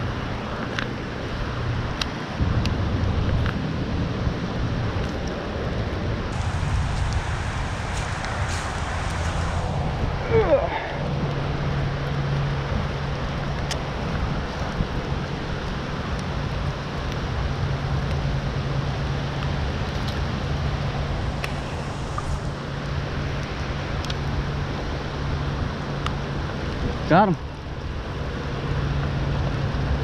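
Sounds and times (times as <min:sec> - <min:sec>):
low hum: 0:00.0 - 0:26.6
rain falling: 0:06.3 - 0:24.6.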